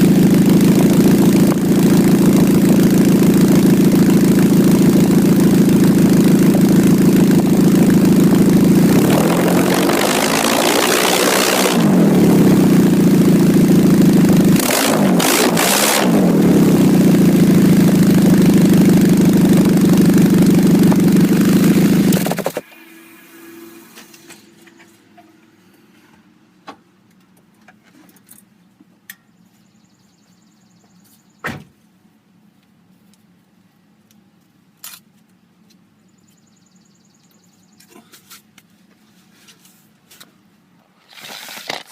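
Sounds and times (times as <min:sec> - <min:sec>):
loud car engine revving: 0:00.0 - 0:22.7.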